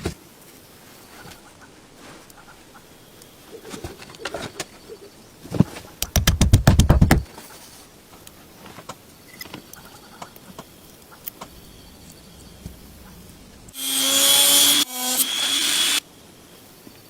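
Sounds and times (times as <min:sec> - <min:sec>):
rapid run of clicks: 0:06.0 - 0:07.3.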